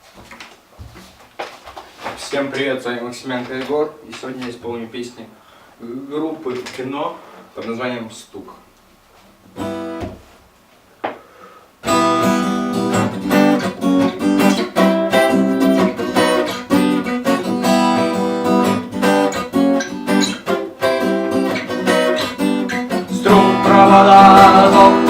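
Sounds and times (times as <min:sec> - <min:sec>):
acoustic guitar strumming: 0:09.6 - 0:10.2, 0:11.8 - 0:25.0.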